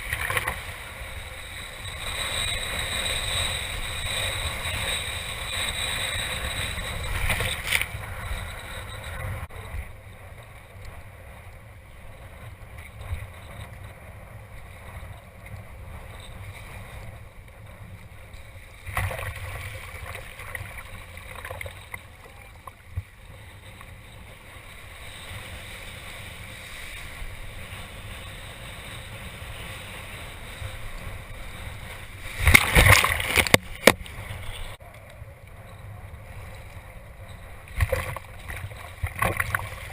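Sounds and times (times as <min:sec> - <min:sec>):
water rushing and splashing: 0:18.8 - 0:23.2, 0:31.8 - 0:34.7, 0:37.7 - 0:39.9.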